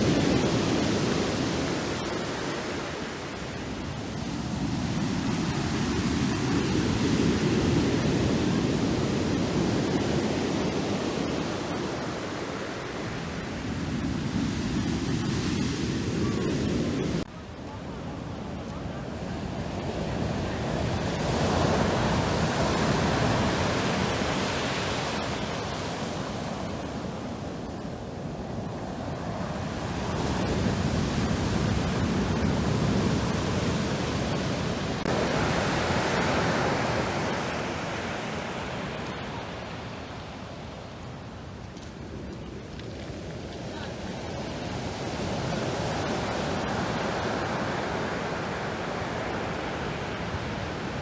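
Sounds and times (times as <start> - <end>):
surf washing onto shore: 18.2 - 51.0
waves breaking: 19.2 - 51.0.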